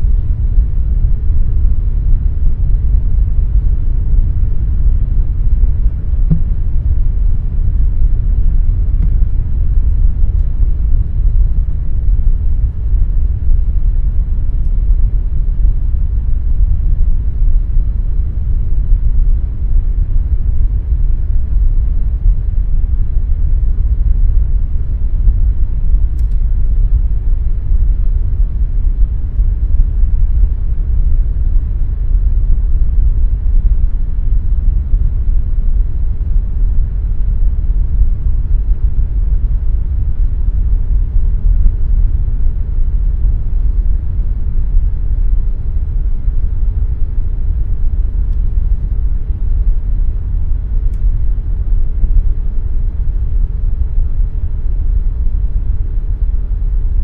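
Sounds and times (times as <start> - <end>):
air conditioner humming: 0.0 - 57.0
soft rush of air: 5.6 - 7.8.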